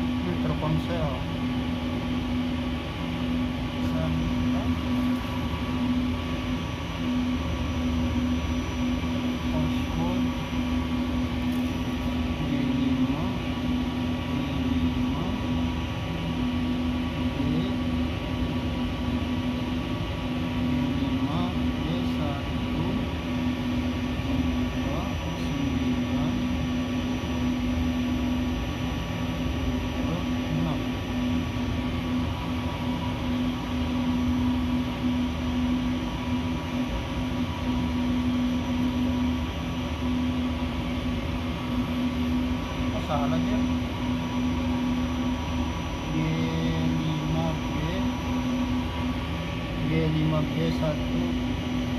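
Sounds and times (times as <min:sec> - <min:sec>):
low mechanical drone: 0:00.0 - 0:51.9
machine hum: 0:00.0 - 0:51.9.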